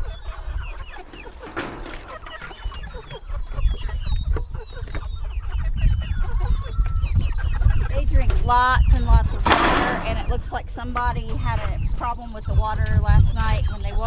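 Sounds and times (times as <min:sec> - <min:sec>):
chickens peeping and clucking: 0:00.0 - 0:14.0
low rumbling noise: 0:07.8 - 0:14.0.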